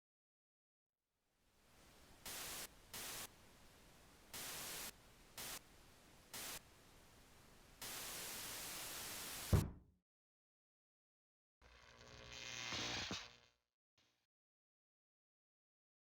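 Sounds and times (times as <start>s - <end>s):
static hiss: 1.5s - 9.6s, 11.7s - 13.5s
bursts of white noise: 1.6s - 9.6s.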